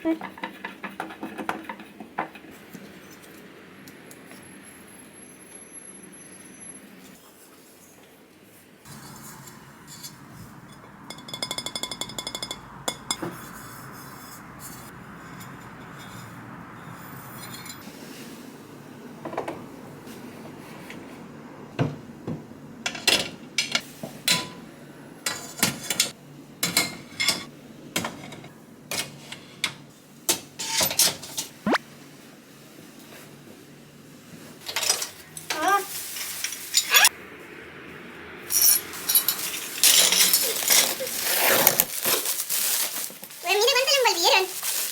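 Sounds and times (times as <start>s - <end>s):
ceramic dishes clinking: 8.9s - 14.6s
steady hiss: 8.9s - 19.1s.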